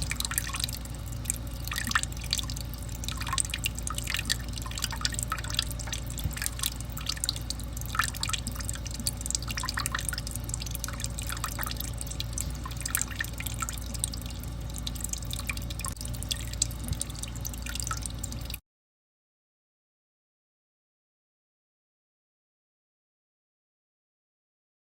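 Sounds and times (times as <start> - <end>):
steady low hum: 0.0 - 18.6
water dripping: 0.0 - 18.6.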